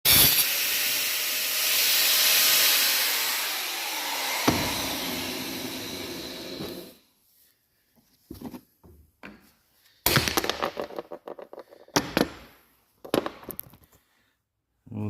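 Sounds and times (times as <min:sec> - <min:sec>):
angle grinder cutting metal: 0:00.1 - 0:07.0.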